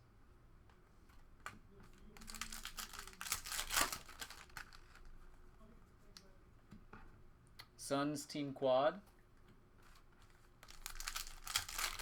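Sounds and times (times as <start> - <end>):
plastic packaging crinkling: 2.0 - 5.3, 9.8 - 12.0.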